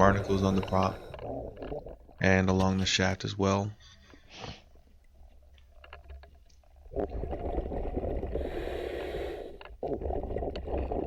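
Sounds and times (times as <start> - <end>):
faint underwater clicks: 0.0 - 3.1, 4.0 - 6.9, 8.2 - 11.0
exhaled breath bubbling underwater: 6.9 - 11.0.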